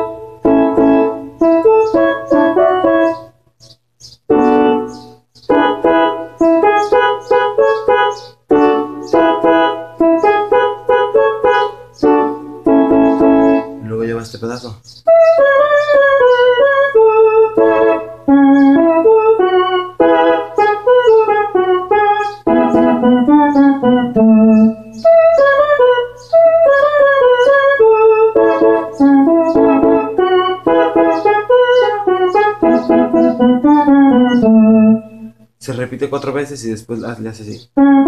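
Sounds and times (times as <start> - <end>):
electronic keyboard melody: 0.0 - 38.0.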